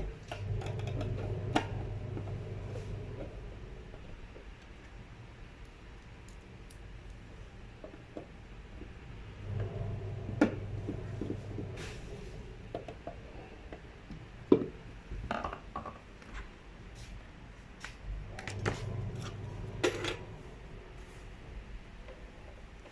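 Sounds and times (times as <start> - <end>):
low hum: 0.0 - 4.4, 9.1 - 13.8, 18.1 - 22.2.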